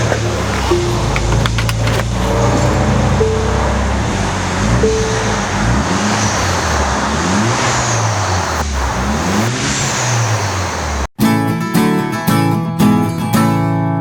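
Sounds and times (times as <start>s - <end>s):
strummed acoustic guitar music: 0.0s - 7.3s
car engine revving: 0.0s - 11.1s.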